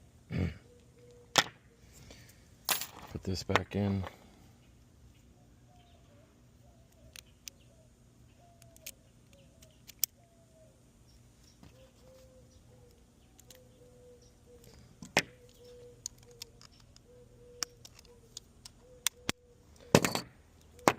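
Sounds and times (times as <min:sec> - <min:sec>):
metal lock parts clicking: 0:08.6 - 0:10.2, 0:13.3 - 0:13.7, 0:14.6 - 0:20.9.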